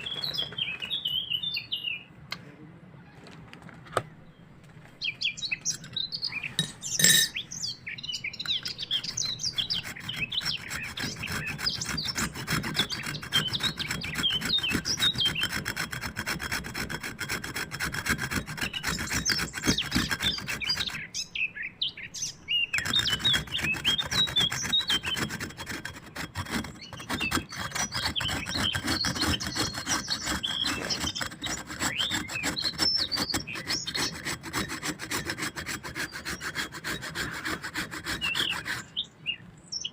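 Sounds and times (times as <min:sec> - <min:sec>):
birds chirping: 0:00.0 - 0:16.1, 0:18.0 - 0:39.9
rapid scraping strokes: 0:08.4 - 0:21.1, 0:22.8 - 0:39.0.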